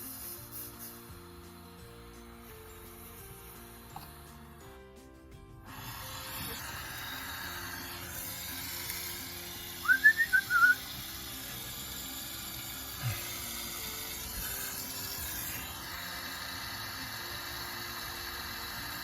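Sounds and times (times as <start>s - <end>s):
steady hiss: 0.0s - 4.7s, 5.6s - 19.0s
high whistle: 9.1s - 11.2s.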